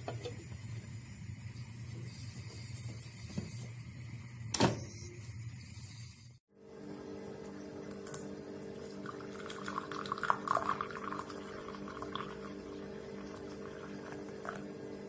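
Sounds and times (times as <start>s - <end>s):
steady low hum: 0.0s - 15.0s
liquid pouring: 8.0s - 14.7s.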